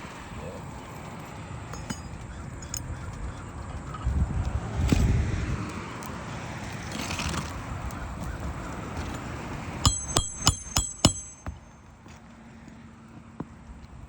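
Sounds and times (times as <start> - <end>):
low rumbling on microphone: 2.2 - 6.0.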